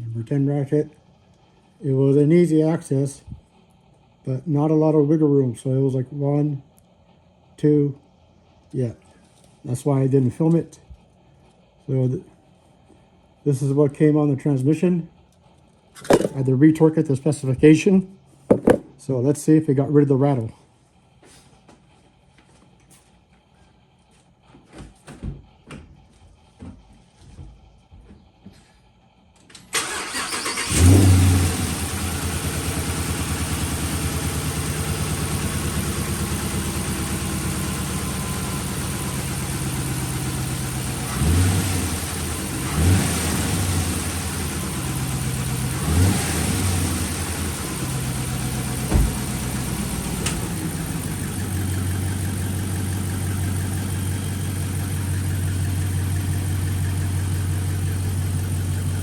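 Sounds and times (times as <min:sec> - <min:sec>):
car engine starting and idling: 0:29.5 - 0:59.0
engine throttle blips: 0:29.8 - 0:59.0.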